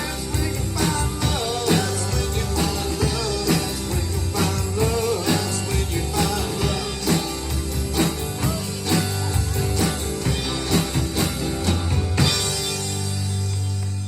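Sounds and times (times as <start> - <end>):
drum beat: 0.0 - 13.5
live band playing: 0.0 - 14.0.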